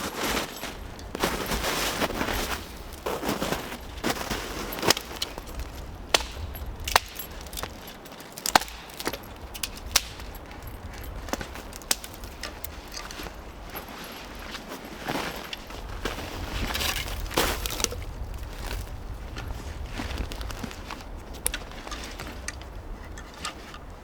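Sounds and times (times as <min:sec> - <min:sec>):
wood cracking and snapping: 0:02.0 - 0:13.8, 0:15.4 - 0:23.7.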